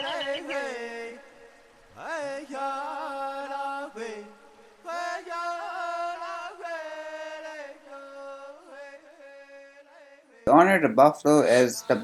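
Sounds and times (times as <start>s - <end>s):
solo voice chanting: 0.0s - 1.2s.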